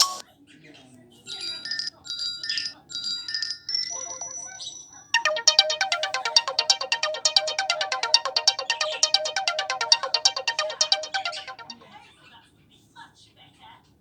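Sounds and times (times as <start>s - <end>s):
chiming phone ringtone: 5.2s - 11.8s
fast ringtone of quick notes: 5.2s - 11.8s.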